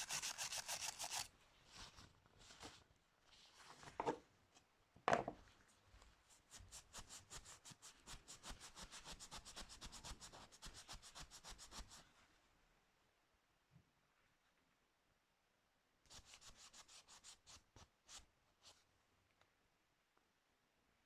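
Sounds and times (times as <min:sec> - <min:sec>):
hand sanding strokes: 0:00.0 - 0:01.3
sharp scrape: 0:00.0 - 0:01.3.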